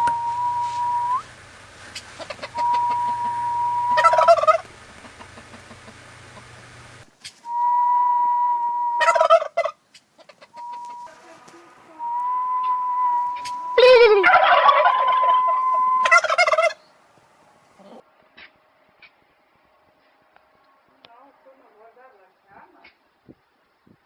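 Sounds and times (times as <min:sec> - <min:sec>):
long steady high note: 0:00.0 - 0:01.3, 0:02.6 - 0:04.4, 0:07.5 - 0:09.2, 0:10.6 - 0:16.4
turkey gobbling: 0:01.8 - 0:07.4, 0:08.9 - 0:11.5, 0:12.6 - 0:16.9.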